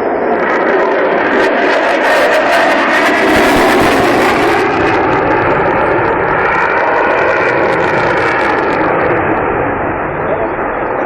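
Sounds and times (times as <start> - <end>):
jet engine roar: 0.0 - 11.0.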